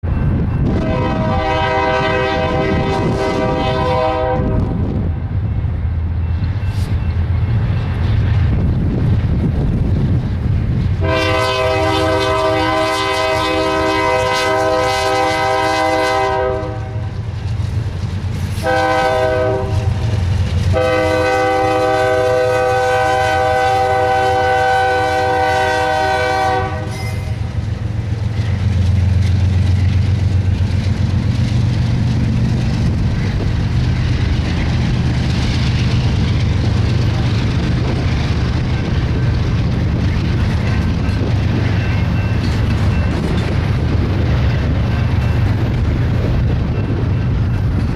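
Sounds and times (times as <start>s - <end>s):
low rumble of diesel locomotives: 0.0s - 47.9s
locomotive air horn blasts: 0.6s - 4.8s, 11.0s - 17.2s, 18.6s - 27.5s.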